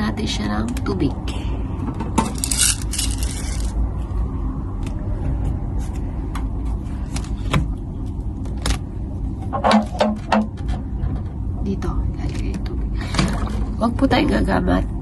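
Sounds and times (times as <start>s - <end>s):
low rumble: 0.8s - 15.0s
plastic parts clicking: 2.2s - 3.7s.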